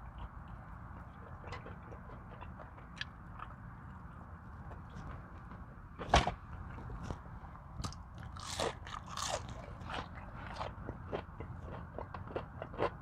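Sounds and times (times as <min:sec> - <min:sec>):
crunchy chewing: 0:06.7 - 0:13.0.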